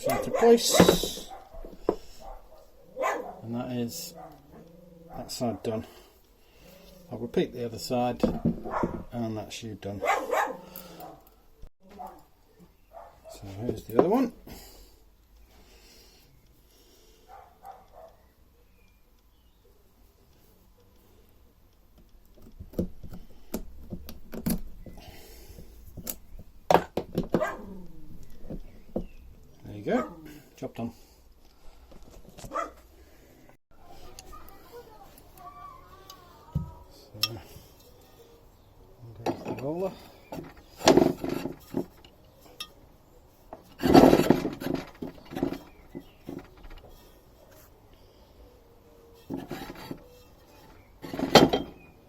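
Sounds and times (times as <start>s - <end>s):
rough scraping rubs: 43.3s - 47.8s, 49.2s - 51.8s.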